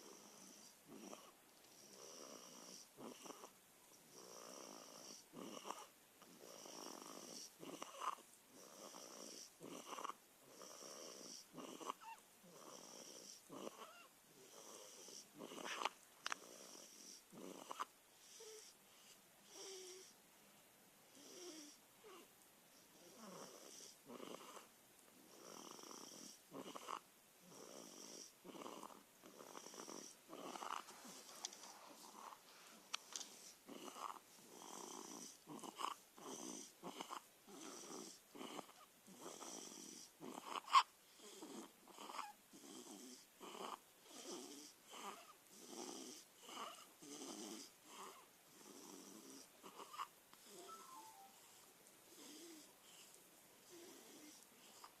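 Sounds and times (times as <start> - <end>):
sharp snort: 15.4 - 15.9
person snoring: 25.4 - 31.2, 33.3 - 55.0.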